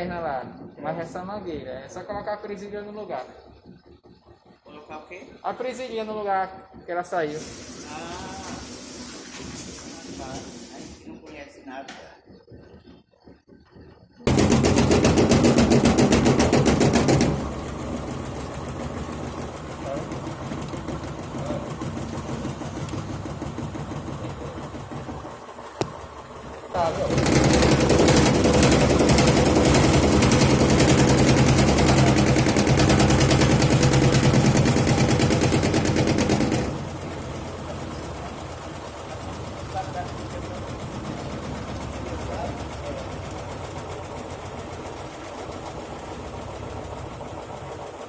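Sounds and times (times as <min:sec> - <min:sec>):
washing machine running: 0:00.0 - 0:48.0
hose knocking inside machine: 0:11.3 - 0:47.7.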